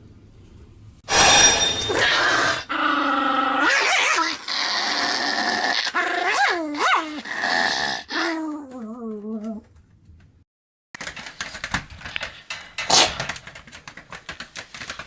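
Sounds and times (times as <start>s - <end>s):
dog pitched vocal sounds: 1.9s - 9.7s
dog sneezing: 12.9s - 13.3s.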